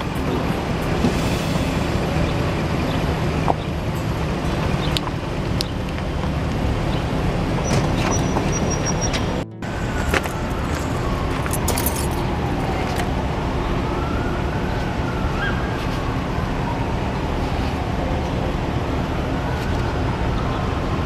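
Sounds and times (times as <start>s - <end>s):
engine running: 0.0s - 15.2s.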